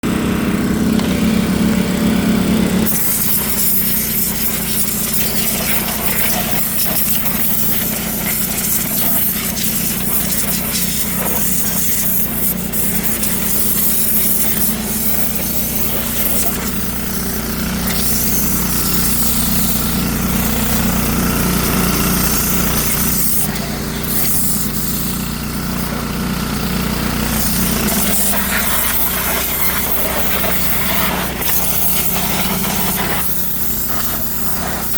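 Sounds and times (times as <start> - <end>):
pressure washer engine running: 0.0 - 34.9
water spray hissing on engine: 0.0 - 34.9.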